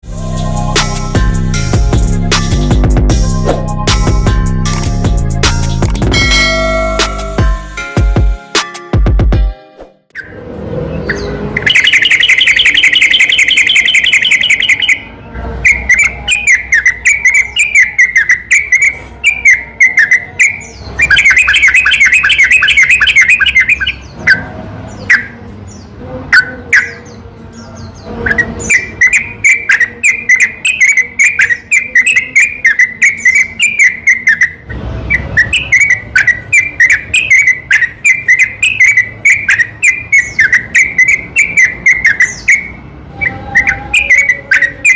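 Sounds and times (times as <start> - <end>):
bird chirping song: 10.1 - 44.9
bird chattering trills: 11.1 - 15.1, 15.7 - 25.4, 28.2 - 44.9.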